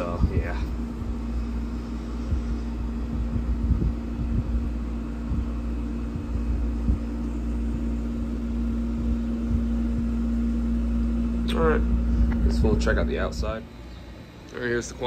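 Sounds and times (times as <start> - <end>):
air conditioner humming: 0.0 - 15.0
short low thumps: 0.2 - 10.4.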